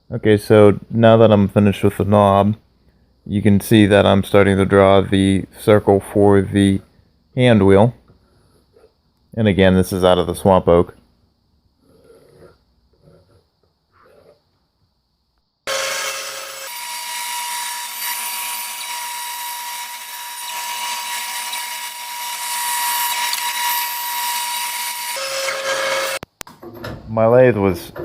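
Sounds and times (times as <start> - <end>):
power tool cutting wood: 15.7 - 26.2.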